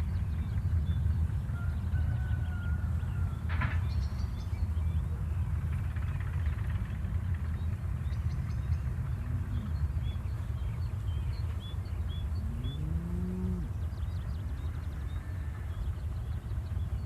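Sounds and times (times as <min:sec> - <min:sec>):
steady low rumble: 0:00.0 - 0:17.0
small birds chirping: 0:06.4 - 0:17.0
cow mooing: 0:09.3 - 0:10.0, 0:12.4 - 0:13.8.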